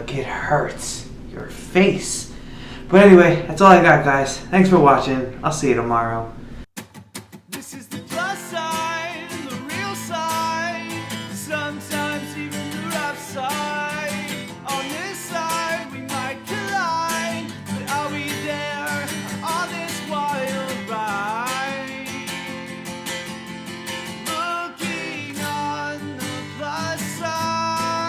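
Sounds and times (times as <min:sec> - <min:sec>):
strummed acoustic guitar: 0:06.8 - 0:28.0
person singing: 0:07.5 - 0:22.7, 0:24.2 - 0:28.0.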